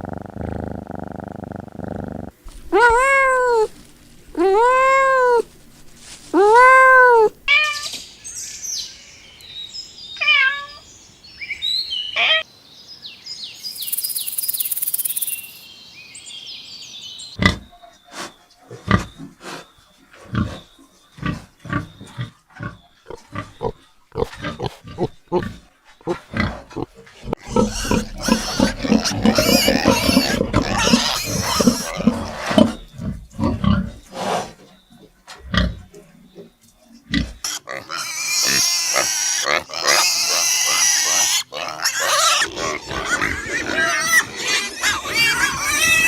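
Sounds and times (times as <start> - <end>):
cat meowing: 2.6 - 3.7, 4.3 - 5.5, 6.4 - 7.9, 10.2 - 10.8
high squeaky calls: 27.4 - 32.1, 40.0 - 46.0.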